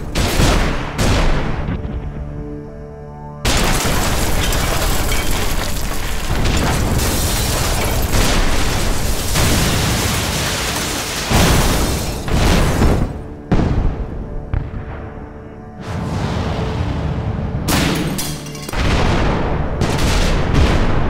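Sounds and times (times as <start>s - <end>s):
explosion blasts: 15.8s - 18.0s, 18.7s - 21.0s.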